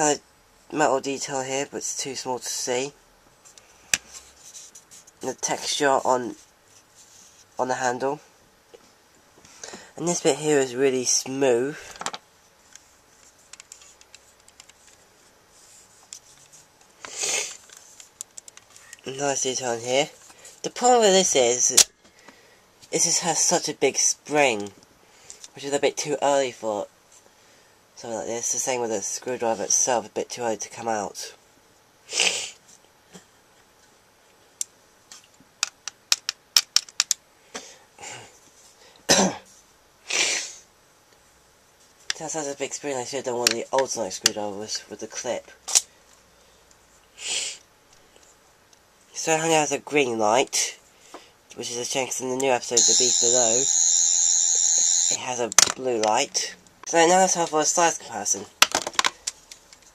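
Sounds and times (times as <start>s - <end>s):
rustling hiss: 11.6s - 20.7s
plastic toy clicks and taps: 35.6s - 37.2s.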